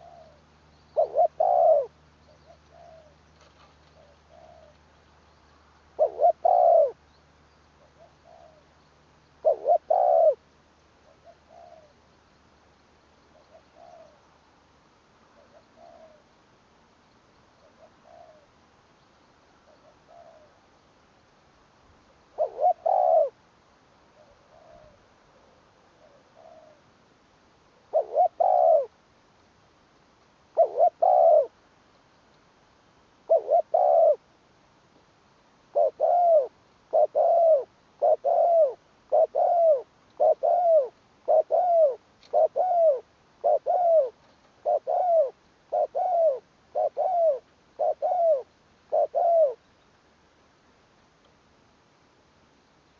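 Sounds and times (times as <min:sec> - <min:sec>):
dove cooing deep notes: 0:00.0 - 0:03.2, 0:03.9 - 0:04.9, 0:05.9 - 0:07.0, 0:07.8 - 0:08.8, 0:09.4 - 0:12.0, 0:13.3 - 0:14.3, 0:15.3 - 0:16.3, 0:17.6 - 0:18.6, 0:19.6 - 0:20.6, 0:22.2 - 0:23.4, 0:24.1 - 0:26.9, 0:27.8 - 0:29.0, 0:30.5 - 0:31.6, 0:33.2 - 0:34.3, 0:35.7 - 0:49.6
faint dove cooing: 0:00.0 - 0:08.8, 0:09.4 - 0:12.1, 0:13.2 - 0:14.4, 0:15.2 - 0:16.4, 0:17.5 - 0:18.6, 0:19.5 - 0:20.8, 0:22.1 - 0:23.4, 0:24.0 - 0:27.0, 0:27.7 - 0:29.0, 0:30.5 - 0:31.6, 0:33.2 - 0:34.4, 0:35.6 - 0:49.7.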